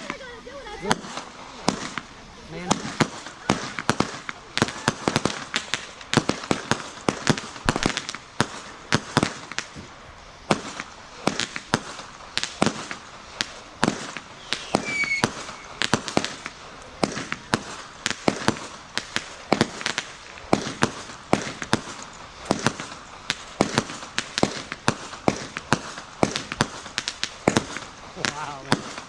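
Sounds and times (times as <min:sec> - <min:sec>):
fireworks bangs and pops: 0:00.0 - 0:29.0
faint firework whistle: 0:12.6 - 0:16.5.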